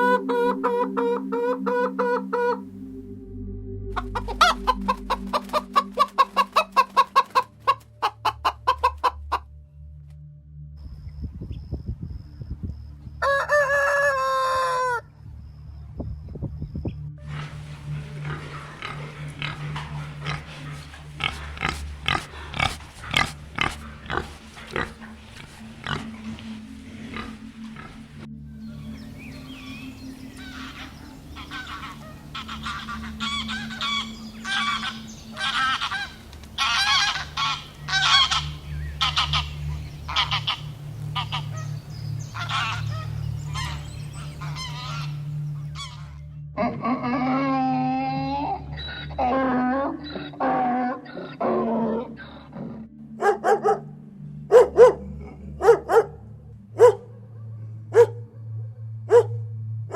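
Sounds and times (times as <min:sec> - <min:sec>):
drawn-out animal call: 0:29.8 - 0:47.7.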